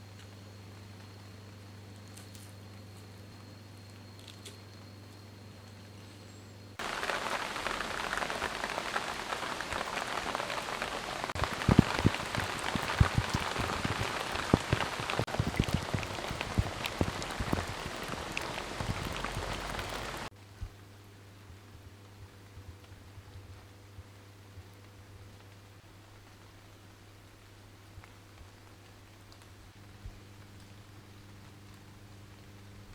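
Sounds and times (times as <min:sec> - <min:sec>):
rain pattering: 0:06.8 - 0:32.9.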